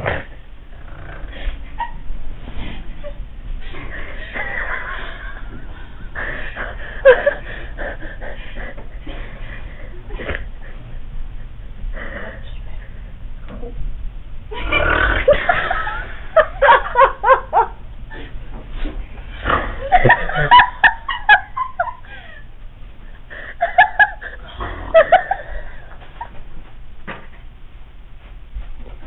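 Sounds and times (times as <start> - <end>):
pitched giggling: 3.0 - 10.9, 19.7 - 22.4, 23.3 - 26.4.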